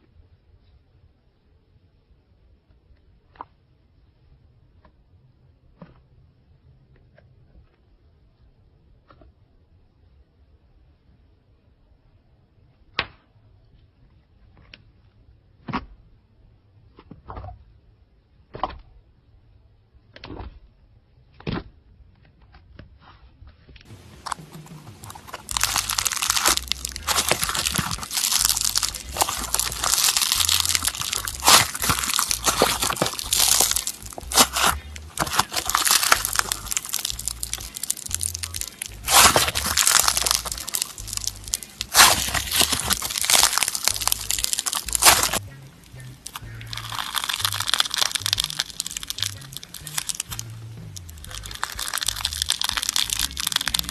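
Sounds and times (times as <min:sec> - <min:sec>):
crunchy slime crackling and popping: 0:23.9 - 0:53.9.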